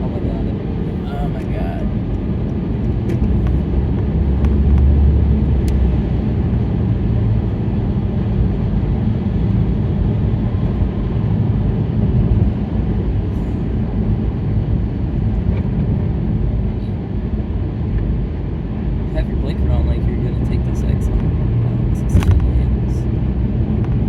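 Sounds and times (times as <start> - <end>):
car road rumble on wet pavement: 0.0 - 24.0.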